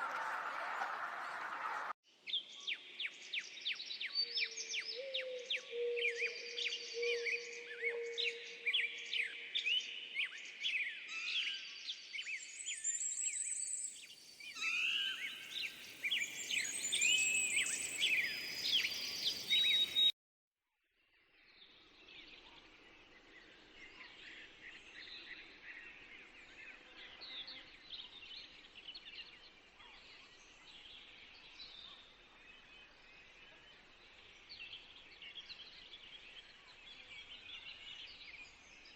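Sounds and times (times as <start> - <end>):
small birds chirping and singing: 2.4 - 20.1.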